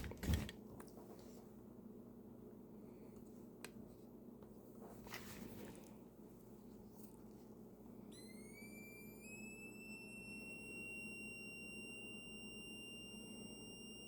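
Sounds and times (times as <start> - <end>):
high electronic tone: 8.2 - 14.0.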